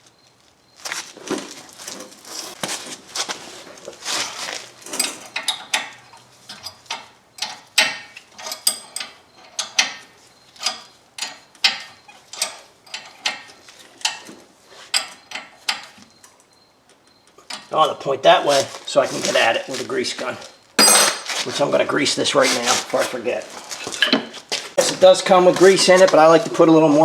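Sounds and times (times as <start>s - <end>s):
metal tools clattering and scraping: 3.6s - 16.2s, 18.5s - 21.7s, 22.3s - 27.0s.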